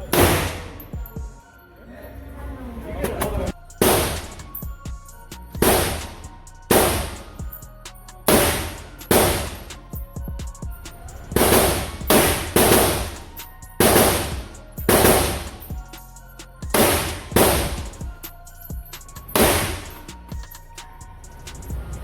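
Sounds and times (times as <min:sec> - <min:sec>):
gunshots with echo: 0:00.0 - 0:00.9, 0:03.8 - 0:04.4, 0:05.6 - 0:07.3, 0:08.3 - 0:09.7, 0:11.4 - 0:13.2, 0:13.8 - 0:15.6, 0:16.7 - 0:17.9, 0:19.4 - 0:20.0
background music: 0:00.0 - 0:22.0.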